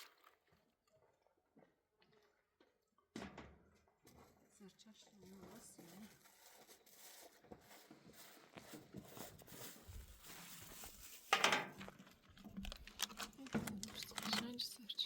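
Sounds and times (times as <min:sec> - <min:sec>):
handling and rustling noises: 0:04.0 - 0:15.0.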